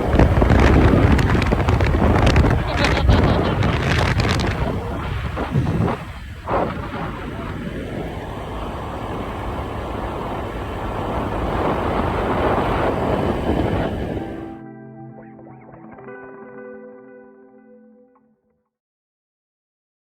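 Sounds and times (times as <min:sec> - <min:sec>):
wind buffeting microphone: 0:00.0 - 0:14.6.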